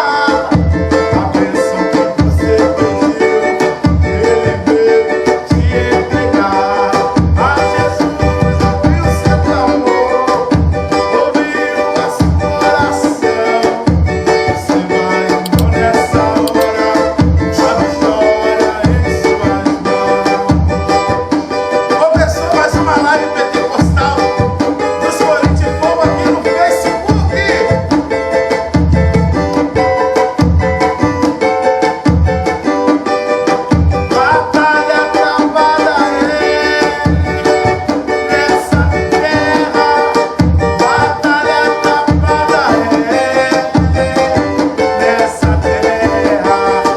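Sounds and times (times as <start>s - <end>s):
hand drum beats: 0.4s - 9.9s, 12.1s - 18.2s, 18.8s - 46.9s
small guitar strummed: 22.8s - 46.9s.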